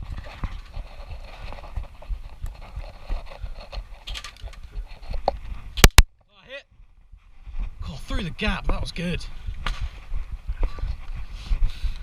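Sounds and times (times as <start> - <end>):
gear knocking and rustling: 0.0 - 5.7
footsteps: 0.0 - 5.9, 6.7 - 12.0
sharp clicks: 3.7 - 6.1.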